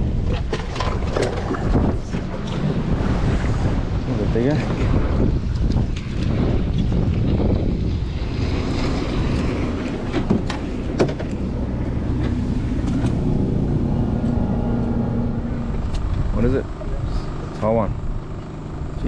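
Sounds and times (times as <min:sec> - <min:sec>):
wind buffeting microphone: 0:00.0 - 0:19.0
boat motor idling: 0:03.8 - 0:19.0.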